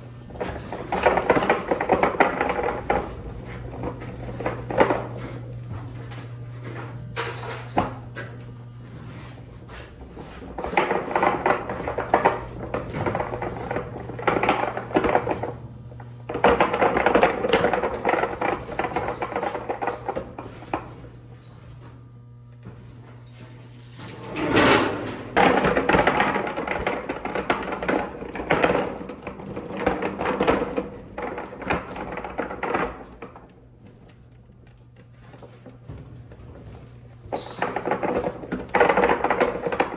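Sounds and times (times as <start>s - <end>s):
steady low hum: 0.0s - 39.9s.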